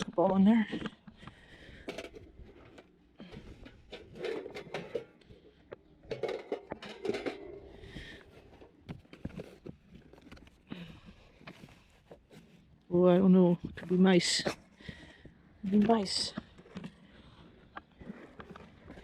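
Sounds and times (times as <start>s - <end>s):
junk knocking and clinking: 6.0s - 7.9s.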